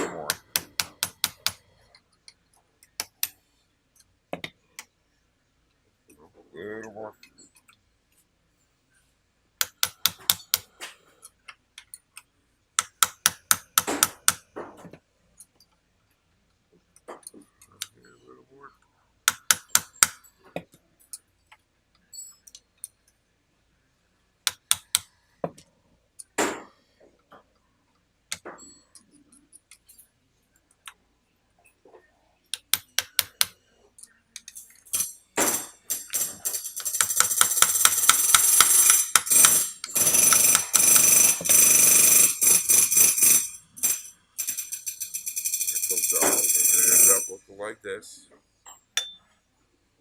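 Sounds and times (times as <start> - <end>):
hammer tapping metal punch: 9.6 - 10.7, 19.3 - 20.2, 34.4 - 45.6.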